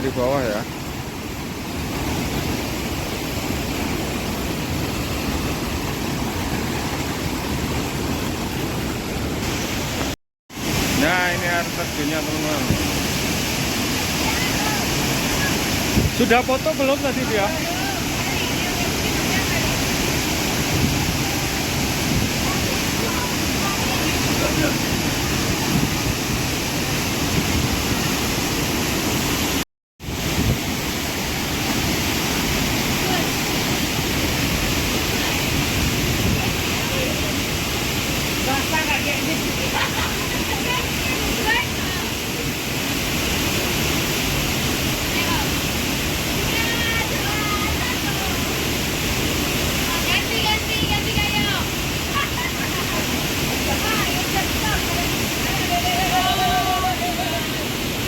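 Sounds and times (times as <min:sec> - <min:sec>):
waterfall roaring: 0:00.0 - 0:58.0
wind buffeting microphone: 0:12.6 - 0:16.2, 0:17.3 - 0:29.4, 0:30.0 - 0:42.2, 0:43.2 - 0:58.0.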